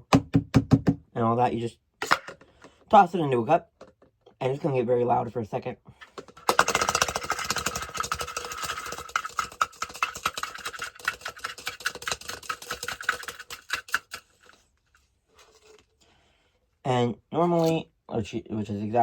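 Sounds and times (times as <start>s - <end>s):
egg rattling in a cup: 6.1s - 14.6s.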